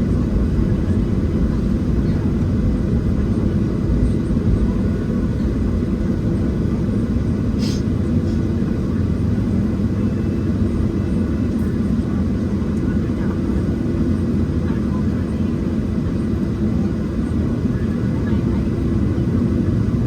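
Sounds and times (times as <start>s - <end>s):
jet engine cabin roar: 0.0s - 20.0s.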